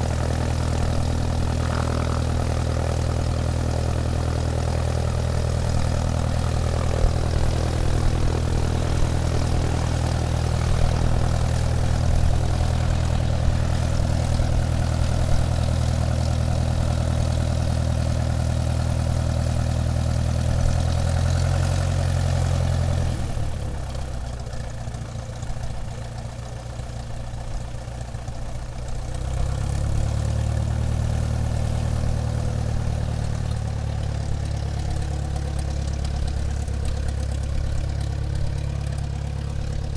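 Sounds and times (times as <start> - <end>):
airplane engines droning: 0.0 - 17.2.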